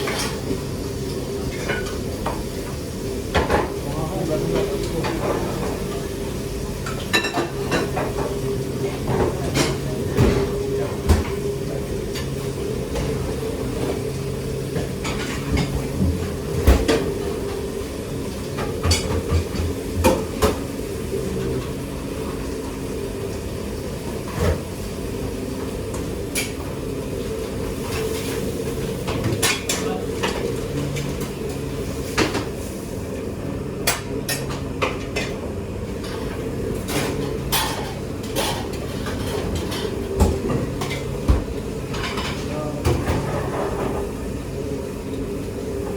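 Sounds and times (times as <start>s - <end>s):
pots and pans clattering: 18.4s - 20.6s, 36.0s - 44.2s.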